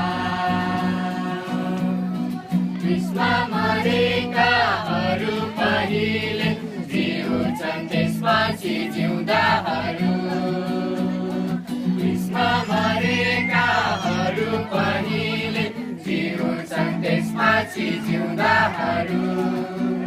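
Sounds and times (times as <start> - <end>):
choir singing gospel song: 0.0 - 2.0, 2.9 - 20.0
held accompaniment: 11.9 - 19.8.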